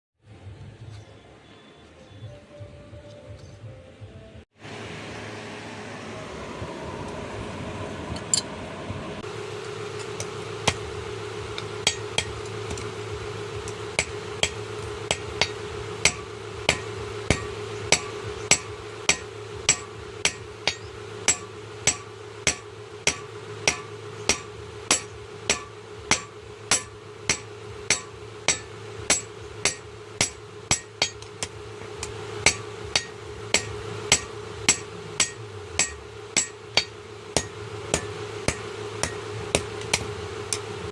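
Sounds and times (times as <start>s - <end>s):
steady hum: 4.3s - 40.9s
hammer striking iron on anvil: 10.0s - 40.8s.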